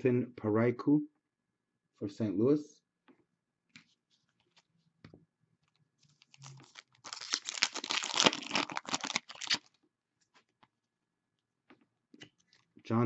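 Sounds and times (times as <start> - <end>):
plastic packaging crinkling: 6.1 - 9.8.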